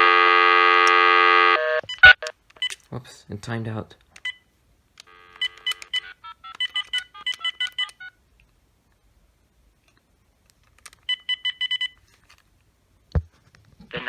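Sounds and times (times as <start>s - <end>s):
touch-tone digits dialing: 5.1s - 8.2s
phone key beep: 5.3s - 8.1s.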